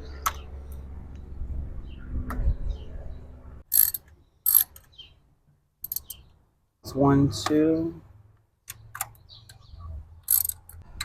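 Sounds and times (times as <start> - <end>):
ratchet wrench clicking: 3.7 - 4.9, 5.8 - 6.2, 10.2 - 10.9.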